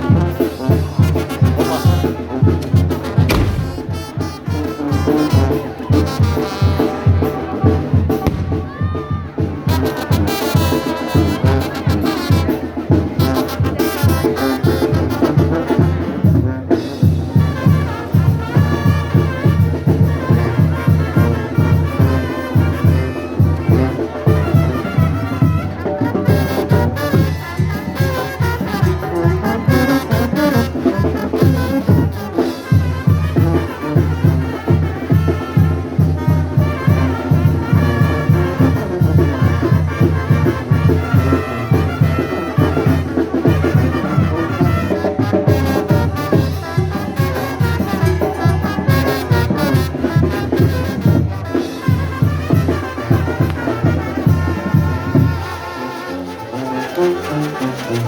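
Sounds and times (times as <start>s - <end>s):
trumpets: 0.0s - 12.6s, 13.2s - 58.0s
brass band music: 0.0s - 58.0s
quick bass beat: 3.3s - 4.4s.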